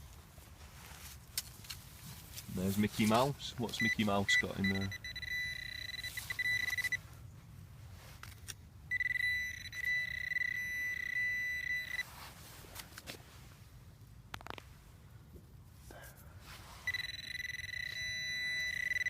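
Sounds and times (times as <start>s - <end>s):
pinpointer high electronic tone: 3.8s - 7.0s, 8.9s - 12.1s, 16.9s - 19.0s.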